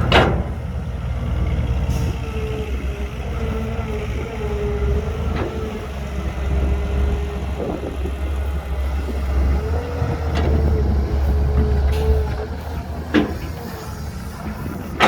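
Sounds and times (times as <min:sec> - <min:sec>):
diesel engine running: 0:00.0 - 0:15.0.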